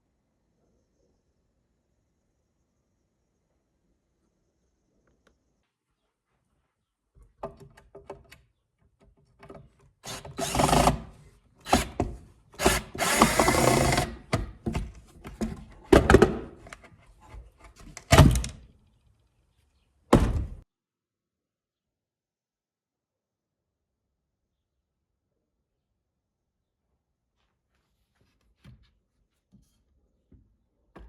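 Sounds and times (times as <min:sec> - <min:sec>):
power tool working on wood: 0:10.0 - 0:14.5.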